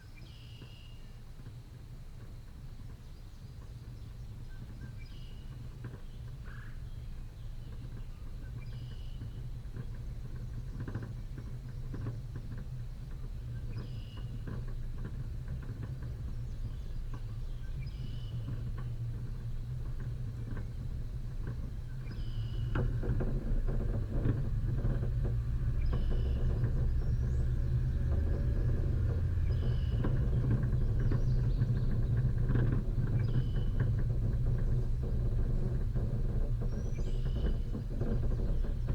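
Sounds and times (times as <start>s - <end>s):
off-road vehicle engine: 2.2s - 38.9s
vehicle body rattling: 9.6s - 38.9s.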